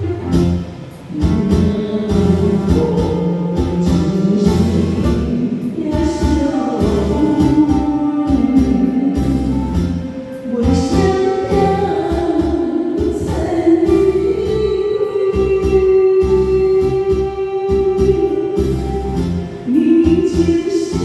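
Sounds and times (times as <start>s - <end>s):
pop song with singing: 0.0s - 21.0s.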